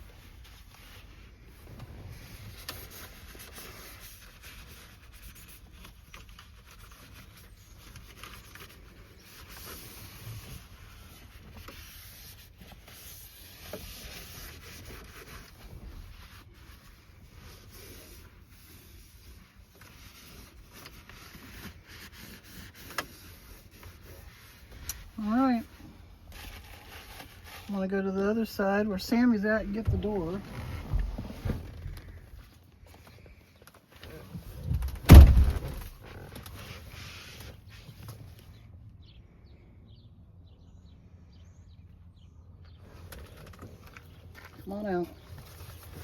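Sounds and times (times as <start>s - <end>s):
cloth rubbing: 30.0s - 32.2s.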